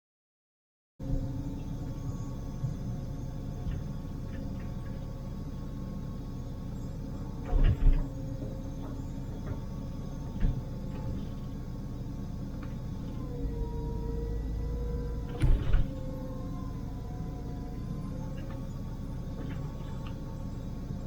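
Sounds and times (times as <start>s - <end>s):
excavator diesel engine running: 1.0s - 21.0s
sharp metal clunks: 15.3s - 16.0s.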